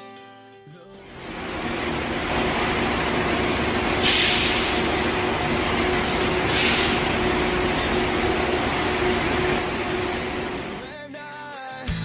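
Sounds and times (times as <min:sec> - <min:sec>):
monorail train rumbling: 0:01.0 - 0:10.9
short bursts of hiss: 0:02.2 - 0:07.9.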